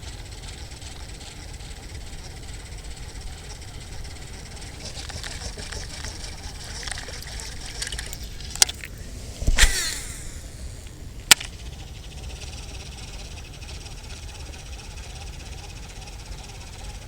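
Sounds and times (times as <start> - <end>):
reel spool whirring: 0.0 - 17.0
wind noise on microphone: 3.8 - 11.5
sharp reel click: 4.8 - 11.6
fishing rod swish: 5.8 - 11.2.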